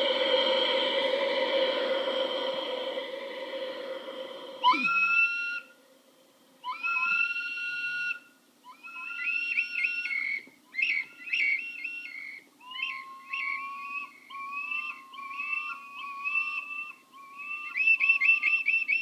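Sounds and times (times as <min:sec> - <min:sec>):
whistle instrument warbling: 0:04.6 - 0:05.7, 0:06.7 - 0:10.2, 0:12.6 - 0:19.0.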